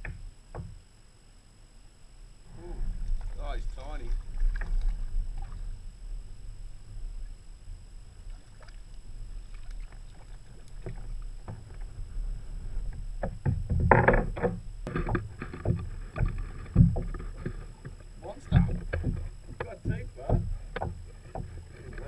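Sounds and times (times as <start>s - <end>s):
steady low rumble: 0.0s - 22.0s
water splashing: 3.0s - 6.3s, 8.1s - 13.2s.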